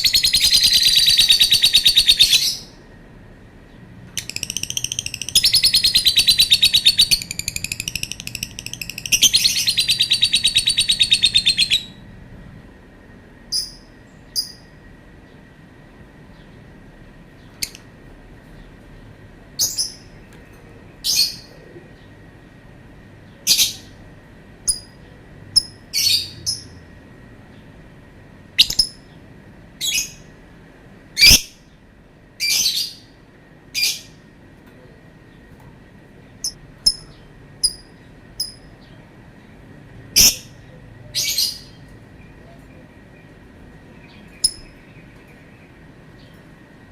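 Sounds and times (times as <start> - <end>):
lovebird chattering trill: 0.0 - 2.8, 4.2 - 12.0, 19.6 - 20.1, 24.6 - 25.0, 28.6 - 29.1, 36.4 - 38.8, 40.2 - 40.6, 44.0 - 45.0.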